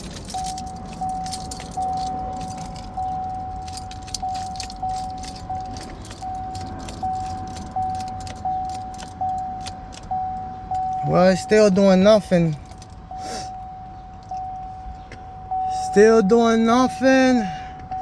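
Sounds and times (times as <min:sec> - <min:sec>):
keys jingling and clicking: 0:00.0 - 0:13.1, 0:14.1 - 0:14.6, 0:15.5 - 0:18.0
dashboard warning chime: 0:00.0 - 0:18.0.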